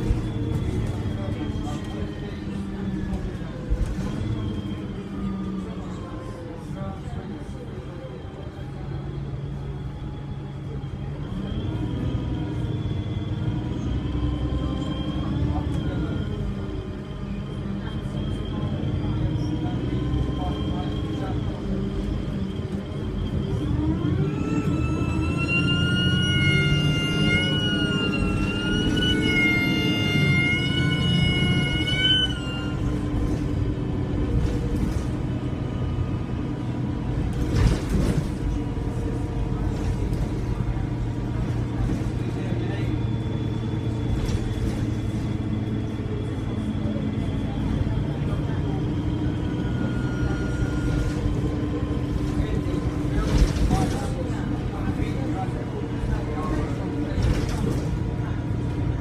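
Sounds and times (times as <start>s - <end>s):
bus diesel engine under load: 0.0s - 59.0s
turbo whistle: 24.4s - 33.0s.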